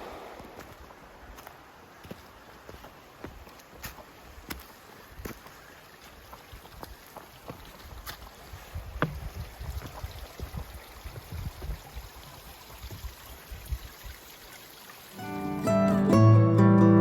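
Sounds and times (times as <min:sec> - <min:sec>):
stream water running: 0:00.0 - 0:16.1
acoustic guitar music: 0:15.2 - 0:17.0.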